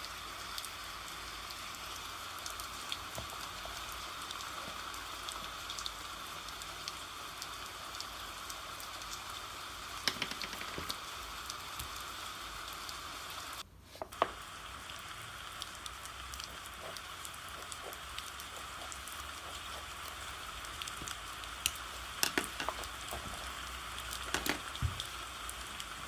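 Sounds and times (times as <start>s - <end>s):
steady rain hiss: 0.0s - 26.0s
rain drop ticks: 14.9s - 19.6s.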